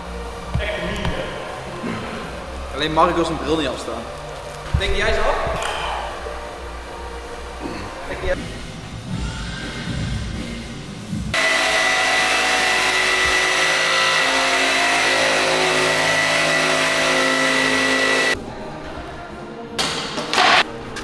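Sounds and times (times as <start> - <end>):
power tool motor whining: 11.4 - 18.4.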